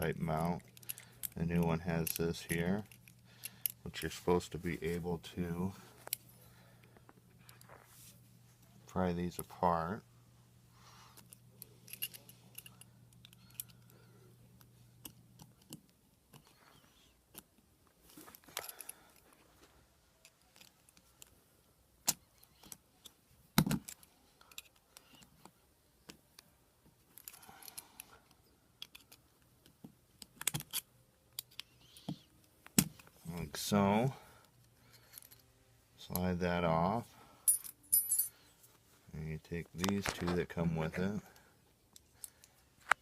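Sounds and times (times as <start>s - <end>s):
low steady hum: 0.0s - 43.0s
metal parts clicking and clinking: 0.1s - 5.0s, 11.2s - 14.1s, 15.0s - 19.3s, 20.2s - 21.4s, 22.0s - 25.5s, 27.0s - 33.7s, 34.7s - 35.5s, 37.4s - 38.4s.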